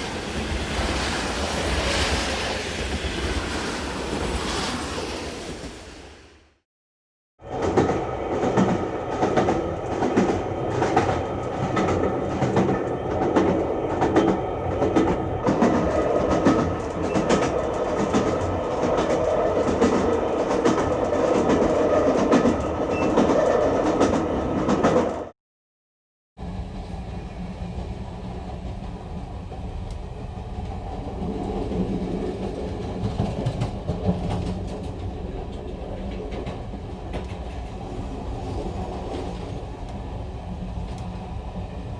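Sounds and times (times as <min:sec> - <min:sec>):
low rumble of running train: 0:00.0 - 0:06.6, 0:07.4 - 0:25.3, 0:26.4 - 0:41.9
train wheels clickety-clack: 0:07.4 - 0:25.3, 0:26.5 - 0:41.9.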